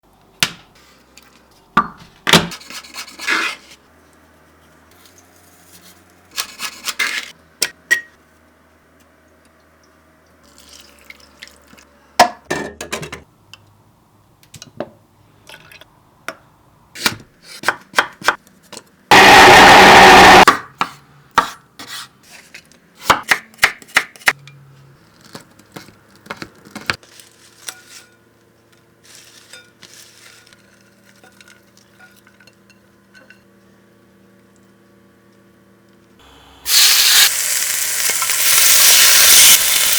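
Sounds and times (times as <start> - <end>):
loud steady burst of noise: 19.1 - 20.5, 36.2 - 39.9.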